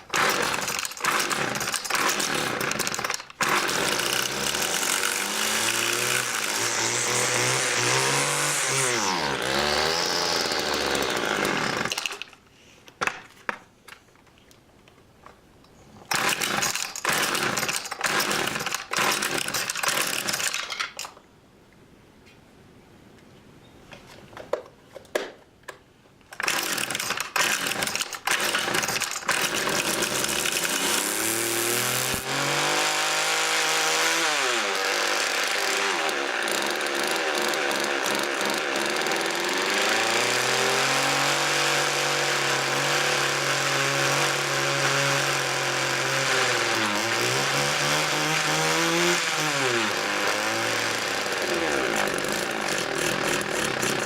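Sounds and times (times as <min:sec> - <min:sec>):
string trimmer engine revving: 0:00.0 - 0:12.3, 0:16.1 - 0:20.6, 0:26.4 - 0:54.0
string trimmer pull-start: 0:00.0 - 0:12.4, 0:16.1 - 0:21.2, 0:26.3 - 0:54.0.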